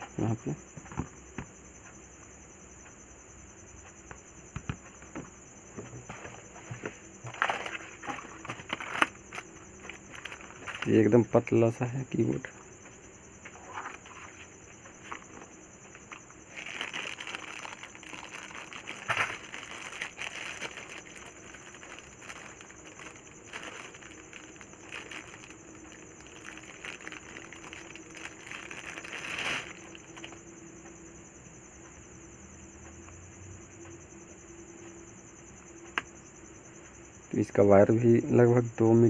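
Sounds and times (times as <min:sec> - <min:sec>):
packaging rustling: 0:07.2 - 0:10.9, 0:15.0 - 0:30.4.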